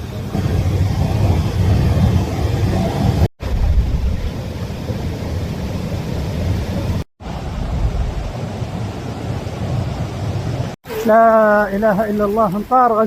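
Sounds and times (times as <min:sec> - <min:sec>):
wind rumble on microphone: 0:00.0 - 0:10.8
rushing water: 0:00.0 - 0:13.0.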